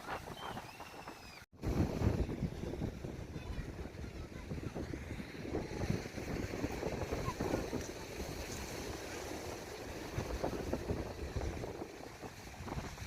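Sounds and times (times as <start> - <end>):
sea waves on shore: 0.0 - 13.0
wind buffeting microphone: 0.0 - 13.0.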